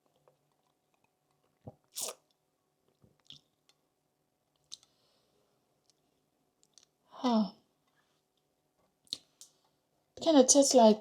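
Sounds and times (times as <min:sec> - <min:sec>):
person slurping a drink: 0:01.6 - 0:02.2.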